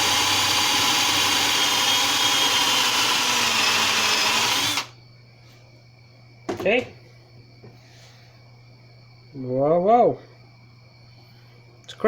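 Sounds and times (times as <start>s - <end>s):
electric drill spinning: 0.0s - 5.0s.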